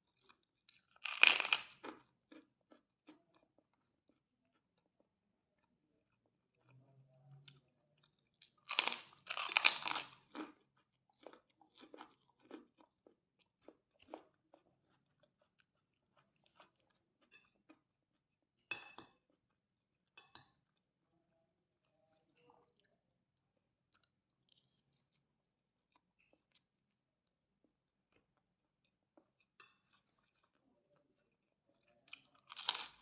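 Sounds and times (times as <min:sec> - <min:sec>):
person chewing: 0:00.0 - 0:21.0, 0:22.7 - 0:33.0
crackers crunching: 0:00.2 - 0:02.9, 0:08.4 - 0:12.9, 0:32.1 - 0:33.0.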